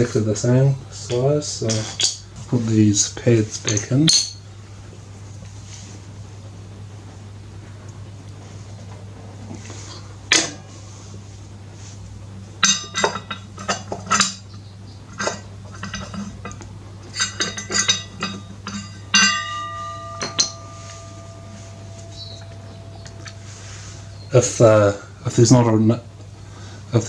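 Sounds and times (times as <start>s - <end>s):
metal tools clinking on brake caliper: 0.0s - 4.5s, 9.7s - 11.2s, 12.6s - 25.6s
metal ringing tone: 3.7s - 4.5s, 9.4s - 11.9s, 12.6s - 26.4s
low hum: 6.5s - 26.9s.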